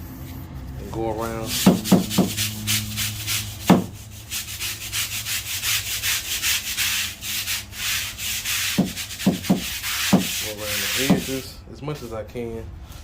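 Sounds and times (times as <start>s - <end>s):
brush scrubbing tile grout: 0.2s - 11.5s
sharp knocks: 1.6s - 2.4s, 3.7s - 3.9s, 8.8s - 10.4s.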